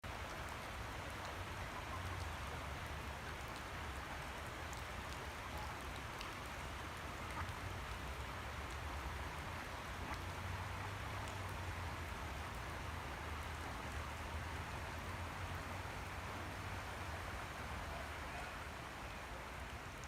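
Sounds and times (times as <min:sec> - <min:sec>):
rain falling on water: 0:00.0 - 0:20.0.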